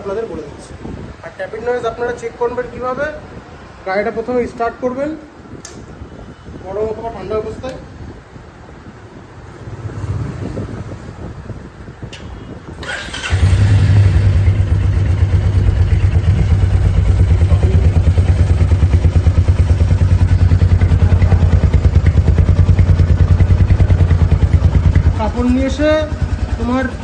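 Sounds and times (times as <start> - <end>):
engine cranking: 12.8 - 15.5
motorcycle engine idling: 13.2 - 27.0.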